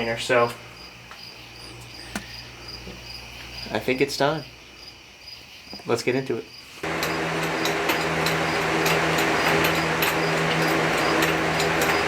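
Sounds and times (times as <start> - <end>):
machine humming: 6.8 - 12.0.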